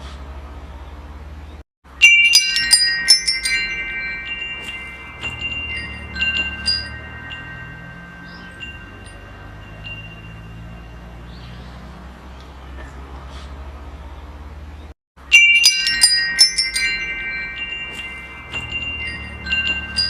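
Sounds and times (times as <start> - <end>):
wind chimes ringing: 1.9 - 12.1, 15.2 - 20.0.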